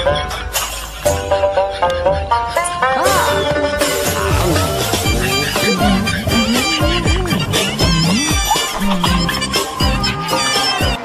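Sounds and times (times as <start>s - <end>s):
wavering high tones: 3.0s - 11.0s
sliding bass note: 3.1s - 10.2s.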